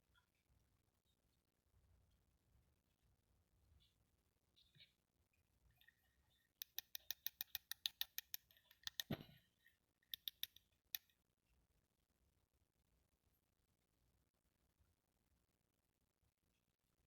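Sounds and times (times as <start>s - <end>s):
plastic toy pieces clicking: 6.6s - 9.2s, 10.2s - 10.6s.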